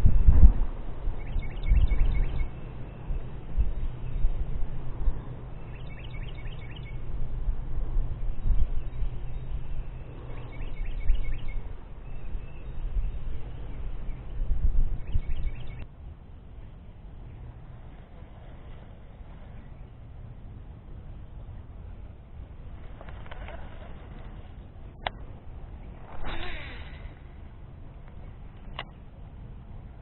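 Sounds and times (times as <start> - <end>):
wind noise on microphone: 0.0 - 30.0
songbird chirping: 1.2 - 4.3, 5.5 - 7.0, 15.0 - 15.9.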